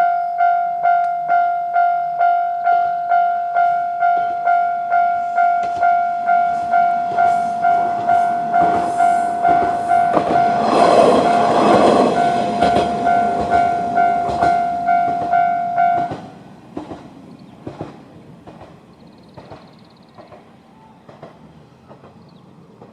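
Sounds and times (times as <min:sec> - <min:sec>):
level crossing bell dinging: 0:00.0 - 0:16.2
diesel railcar passing: 0:00.0 - 0:22.9
train wheel clicks: 0:05.6 - 0:20.5, 0:21.1 - 0:22.9.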